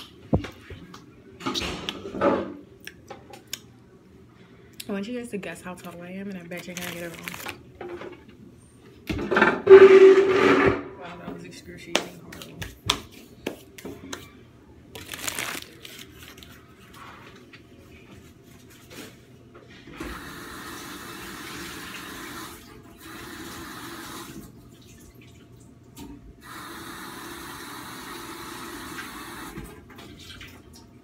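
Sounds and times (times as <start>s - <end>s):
water running from a tap: 20.2s - 25.4s, 26.4s - 29.6s.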